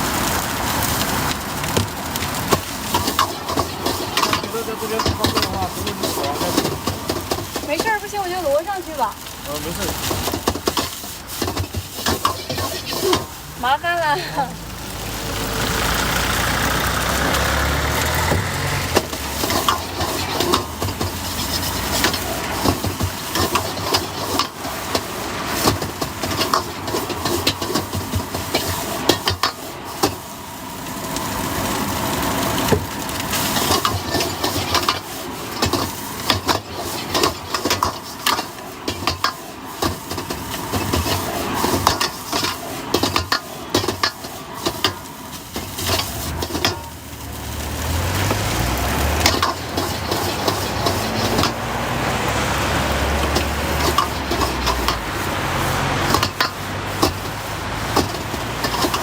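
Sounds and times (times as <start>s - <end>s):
passing traffic: 0.0s - 59.0s
dishes and utensils clattering: 2.9s - 8.1s, 10.1s - 13.4s, 18.0s - 29.6s, 33.6s - 47.0s, 48.1s - 51.8s, 53.2s - 55.1s, 56.0s - 59.0s
low vehicle rumble: 12.4s - 22.7s, 46.0s - 59.0s.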